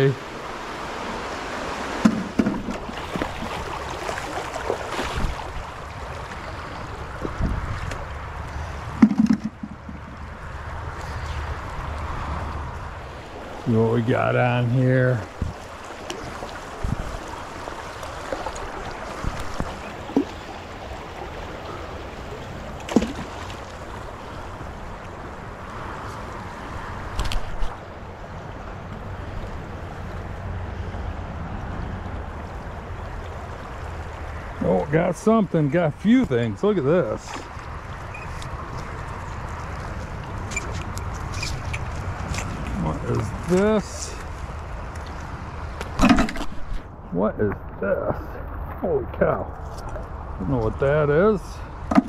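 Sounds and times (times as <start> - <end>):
creek water rushing: 0.0 - 52.0
splashes and knocks: 1.8 - 6.4, 8.9 - 10.3, 15.3 - 20.7, 22.5 - 23.9, 45.8 - 46.8
boots splashing in water: 1.9 - 6.1, 22.7 - 24.0.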